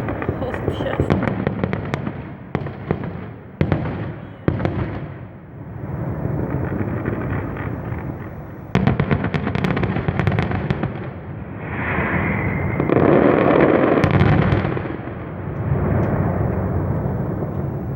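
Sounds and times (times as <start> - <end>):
fireworks crackling bangs: 0.0 - 17.9
firework whistle: 5.6 - 10.6, 11.3 - 17.9
low steady rumble: 15.4 - 17.9.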